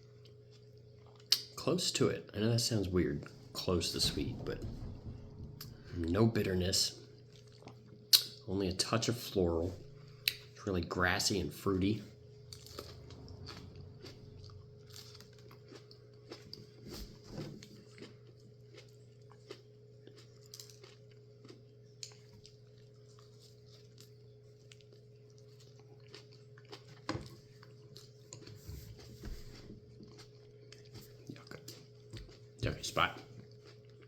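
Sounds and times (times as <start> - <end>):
person chewing crunchy pepper: 0.0 - 1.6, 12.5 - 16.9, 17.6 - 34.0
steady low hum: 1.7 - 16.6.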